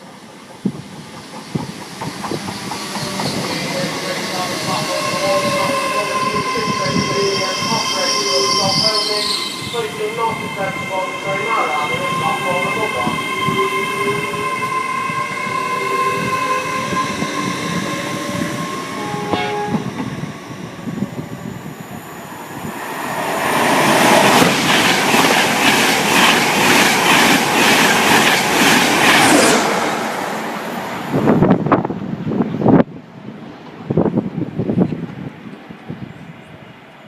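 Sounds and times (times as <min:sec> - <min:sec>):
train rushing past: 0:00.0 - 0:35.4.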